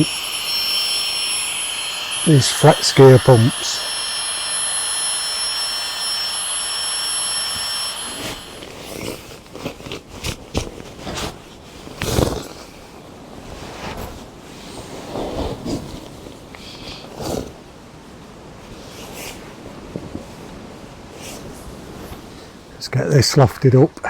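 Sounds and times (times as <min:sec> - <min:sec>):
air pump whining: 0:00.0 - 0:09.0.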